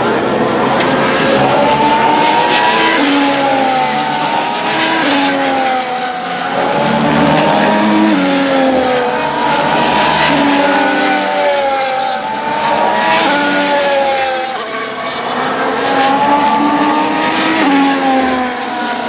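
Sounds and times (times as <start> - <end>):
racing car engines at speed: 0.0 - 19.0.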